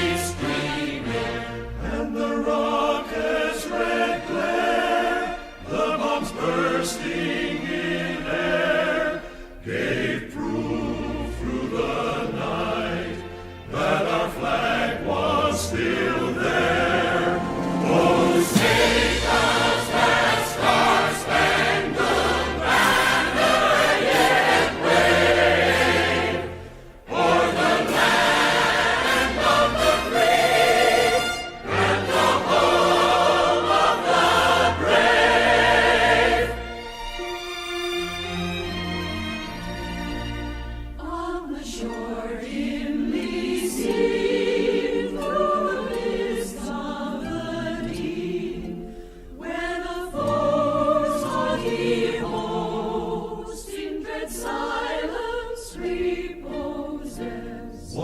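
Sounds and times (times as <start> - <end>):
choir singing held chords: 0.0 - 58.0.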